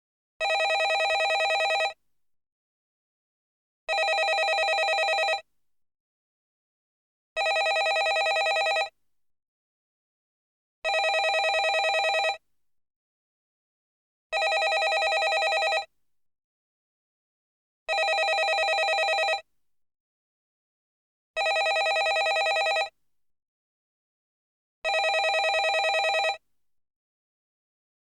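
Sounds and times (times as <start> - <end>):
telephone bell ringing: 0.4 - 2.0, 3.9 - 5.4, 7.4 - 8.9, 10.9 - 12.4, 14.4 - 15.9, 17.9 - 19.4, 21.4 - 22.9, 24.9 - 26.4.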